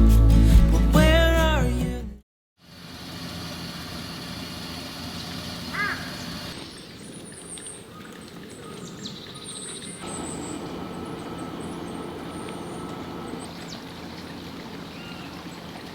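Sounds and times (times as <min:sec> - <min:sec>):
distant traffic rumble: 0:02.8 - 0:15.9
animal call: 0:05.7 - 0:06.5.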